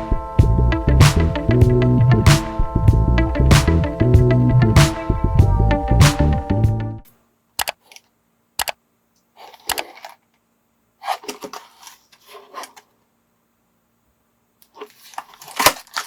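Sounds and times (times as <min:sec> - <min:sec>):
intro music: 0:00.0 - 0:07.1
packaging rustling: 0:11.0 - 0:12.9, 0:14.6 - 0:16.0.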